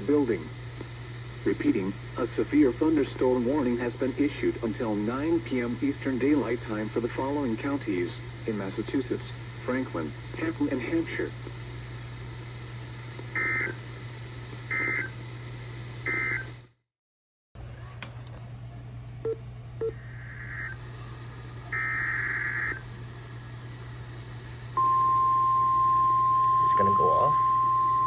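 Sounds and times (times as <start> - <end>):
steady alarm tone: 14.7 - 15.1, 16.1 - 16.5, 24.8 - 28.0
digital data tone bursts: 26.6 - 27.5.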